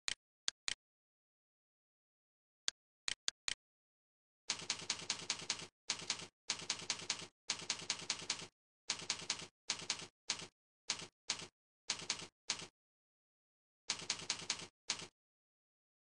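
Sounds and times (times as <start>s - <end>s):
typewriter-like cursor clicks: 4.5s - 12.7s, 13.9s - 15.2s.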